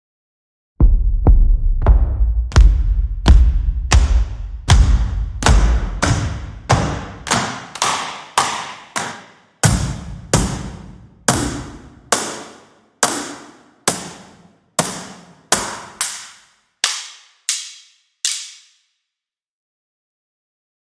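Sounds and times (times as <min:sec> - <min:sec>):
cardboard box percussion hits: 0:02.4 - 0:18.8.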